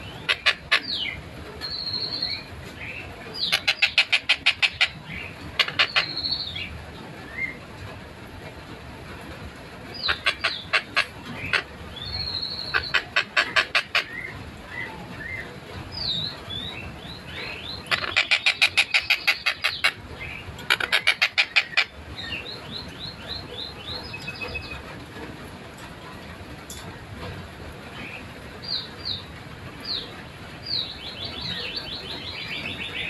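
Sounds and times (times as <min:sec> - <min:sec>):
kingfisher calling sharp notes: 0:17.8 - 0:20.0.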